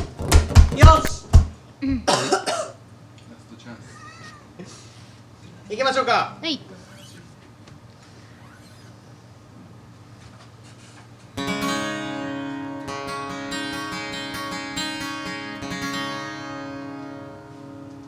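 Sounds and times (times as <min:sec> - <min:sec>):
acoustic guitar strumming chords: 0:00.0 - 0:01.6, 0:11.4 - 0:18.0.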